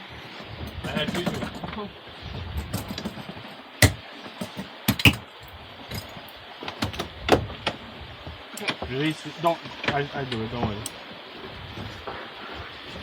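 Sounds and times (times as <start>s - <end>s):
rigging clinking and knocking: 0.4s - 1.7s, 2.6s - 6.2s, 6.8s - 7.1s
sharp metallic clicks: 2.6s - 3.2s.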